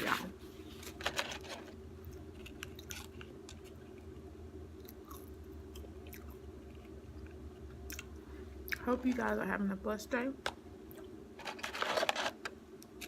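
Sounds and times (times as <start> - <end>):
low room hum: 0.0 - 13.0
person chewing food: 2.0 - 8.8.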